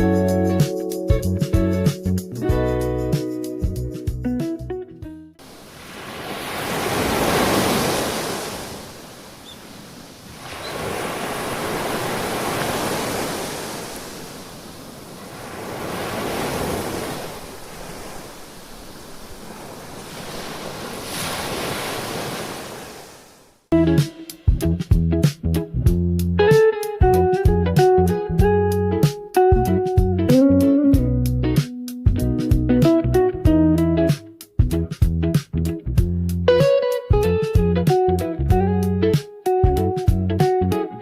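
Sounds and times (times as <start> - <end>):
waves breaking on shore: 5.4 - 23.7.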